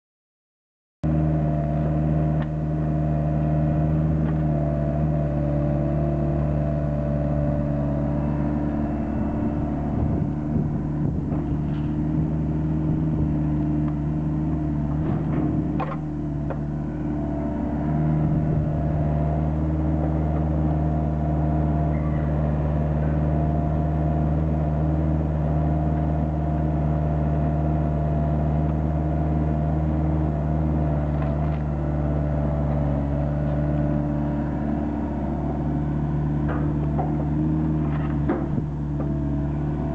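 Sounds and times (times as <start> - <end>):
large engine running: 1.0 - 39.9.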